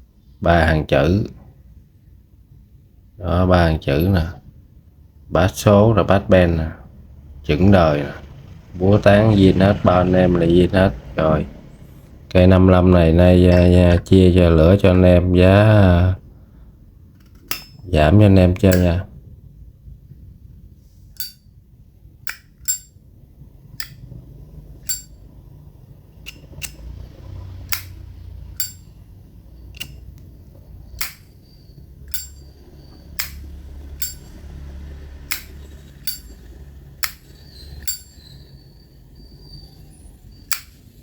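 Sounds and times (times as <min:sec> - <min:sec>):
lighter lid clinking: 0:17.2 - 0:17.8, 0:21.2 - 0:21.4, 0:26.2 - 0:26.8, 0:29.8 - 0:30.1, 0:32.1 - 0:32.5, 0:35.3 - 0:36.4.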